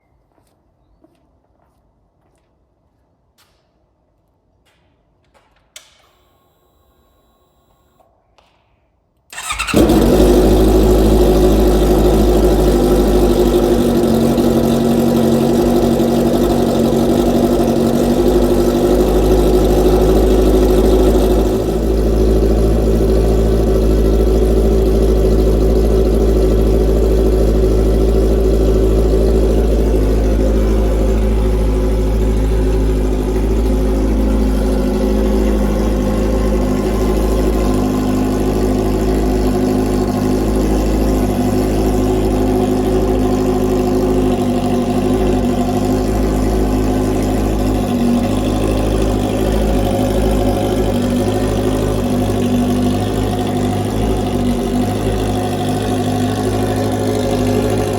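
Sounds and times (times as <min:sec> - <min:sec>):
motorcycle engine idling loud: 0:09.4 - 0:57.9.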